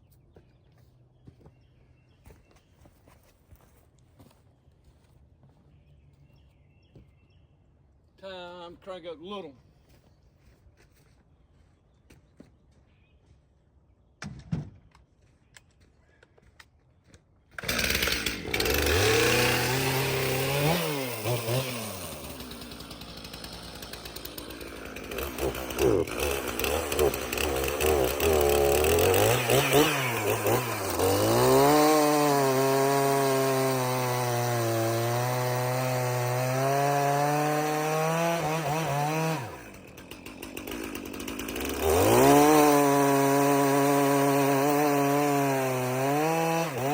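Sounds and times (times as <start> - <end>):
chainsaw revving: 17.6 - 46.9.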